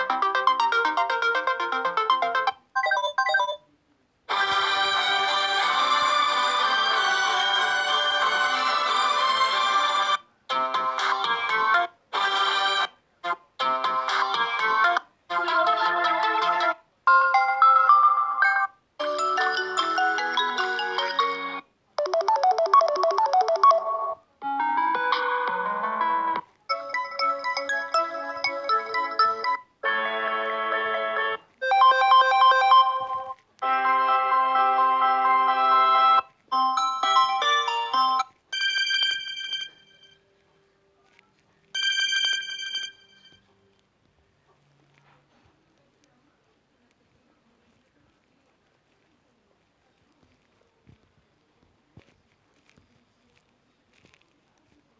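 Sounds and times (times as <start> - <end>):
bright phone chime: 0.0 - 3.6, 22.0 - 24.2, 36.6 - 40.2, 41.8 - 43.4
electronic ringtone melodies: 0.0 - 3.6, 17.1 - 24.2, 26.7 - 29.6, 31.6 - 40.2, 41.8 - 43.4.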